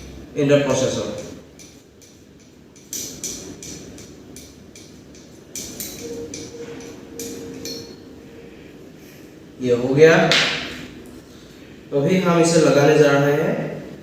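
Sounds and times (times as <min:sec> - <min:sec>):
computer parts clicking and tapping: 0:01.6 - 0:08.0.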